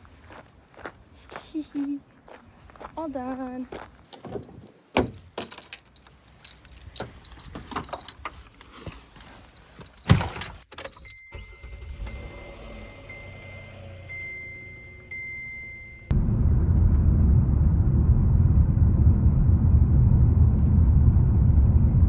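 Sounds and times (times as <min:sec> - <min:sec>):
keys jangling: 0:04.2 - 0:08.5, 0:09.2 - 0:11.2
car warning chime beeping: 0:11.0 - 0:16.1
low steady rumble: 0:12.0 - 0:22.0.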